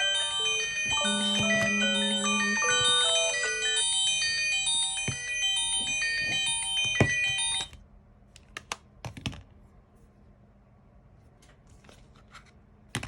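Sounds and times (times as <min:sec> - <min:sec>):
phone alarm ringtone melody: 0:00.0 - 0:07.7.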